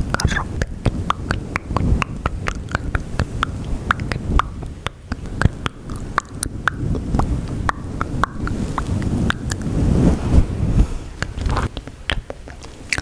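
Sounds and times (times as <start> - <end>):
wet mouth clicks and pops: 0.1 - 9.6, 11.2 - 13.0.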